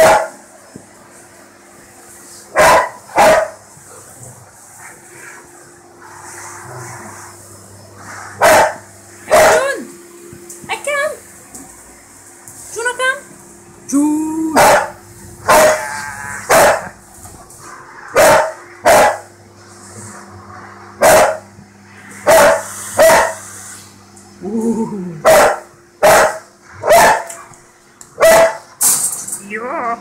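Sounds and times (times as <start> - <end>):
dog barking: 0.0 - 0.4, 2.6 - 3.6, 8.4 - 9.8, 14.6 - 17.0, 18.1 - 19.3, 21.0 - 21.5, 22.2 - 23.4, 25.2 - 27.5, 28.2 - 28.7
steady low hum: 0.0 - 30.0.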